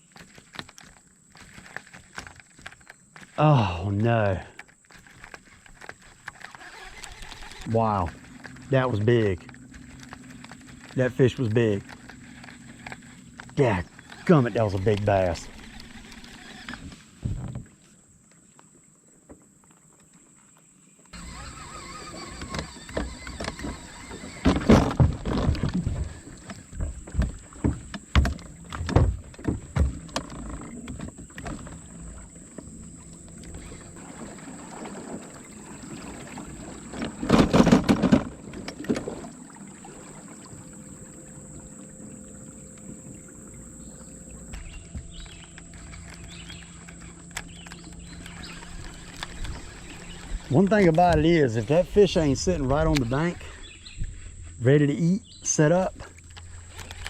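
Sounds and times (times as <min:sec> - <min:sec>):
moving water: 0:00.0 - 0:57.0
knocks and clatter in a boat: 0:04.0 - 0:17.8, 0:21.2 - 0:57.0
faint high whine: 0:39.1 - 0:57.0.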